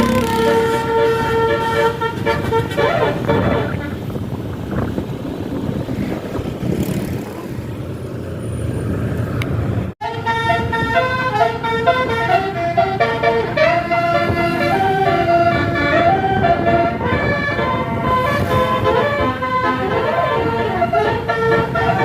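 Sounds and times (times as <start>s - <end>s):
bus horn playing multi-tone tune: 0.0s - 4.2s, 10.0s - 22.0s
bus engine: 0.0s - 22.0s
road noise: 0.0s - 22.0s.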